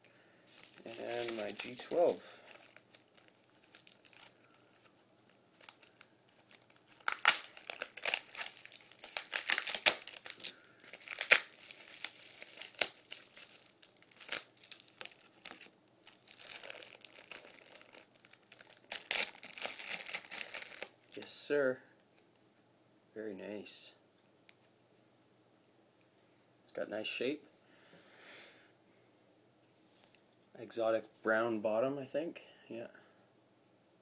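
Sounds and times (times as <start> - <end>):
packaging crinkling and tearing: 0.5 - 21.2.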